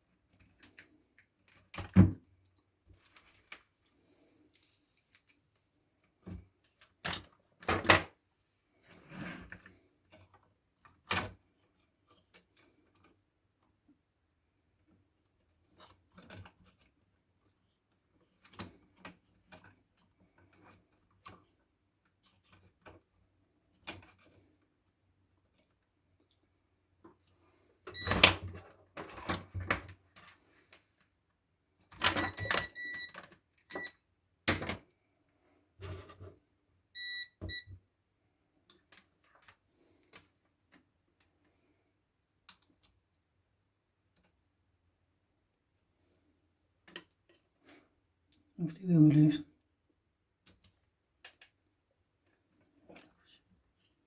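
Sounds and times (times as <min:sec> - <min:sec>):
short electronic beeps: 0:32.2 - 0:33.1, 0:37.0 - 0:37.7.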